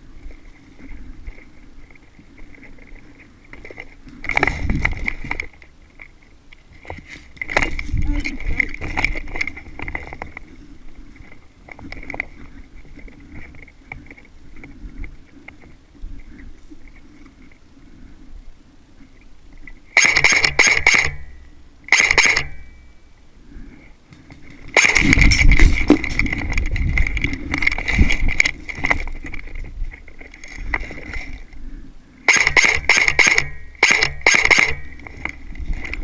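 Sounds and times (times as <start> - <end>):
rustling: 0.0 - 18.3, 19.0 - 36.0
small clicks: 19.5 - 21.3, 21.9 - 22.7, 32.3 - 36.0
airsoft gun firing with whine: 20.0 - 22.8, 24.7 - 25.4, 32.3 - 35.0.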